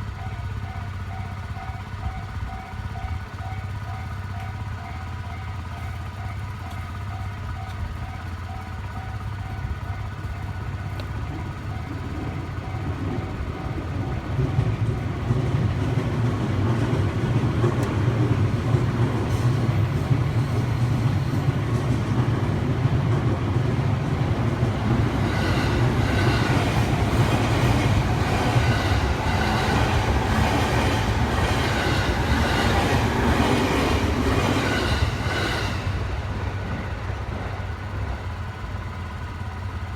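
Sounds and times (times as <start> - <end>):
crossing warning bell: 0.0 - 39.9
train rumble: 0.0 - 39.9
wheels clattering on rails: 0.0 - 39.9.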